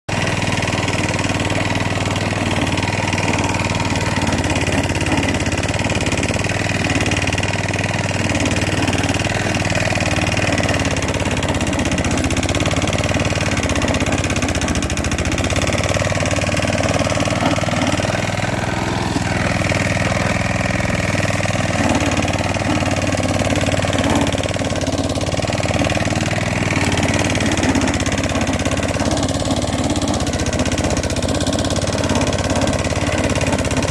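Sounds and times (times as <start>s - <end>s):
lawn mower engine running: 0.1s - 33.9s.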